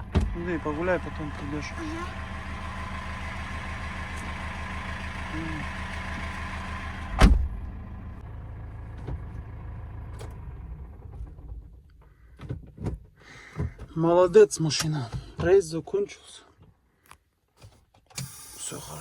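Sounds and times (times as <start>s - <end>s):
van engine idling: 0.0s - 12.4s
door slamming: 7.1s - 7.6s.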